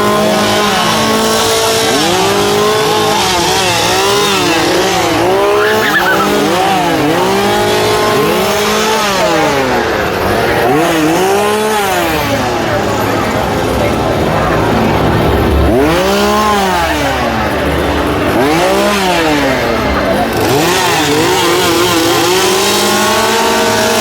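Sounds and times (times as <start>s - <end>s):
chainsaw engines revving: 0.0s - 24.0s.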